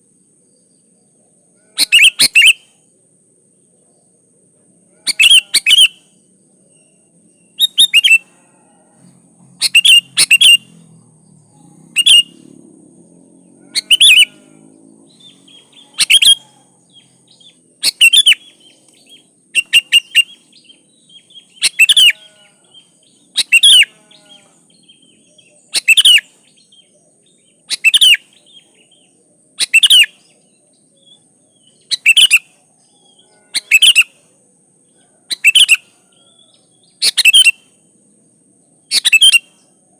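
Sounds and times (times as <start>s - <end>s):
bulbul calling: 1.8s - 2.6s, 7.6s - 8.3s, 9.5s - 10.9s, 11.9s - 12.5s, 13.6s - 30.4s, 31.0s - 32.5s, 35.3s - 35.9s, 37.0s - 37.6s, 38.8s - 39.6s.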